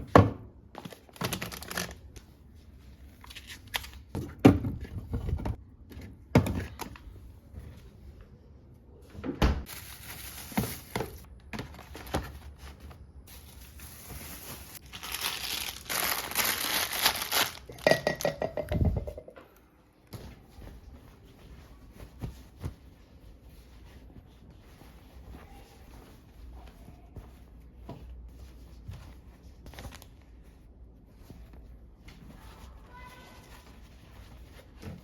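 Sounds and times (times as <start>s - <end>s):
plastic packaging crinkling: 0.9s - 2.2s, 13.3s - 17.9s.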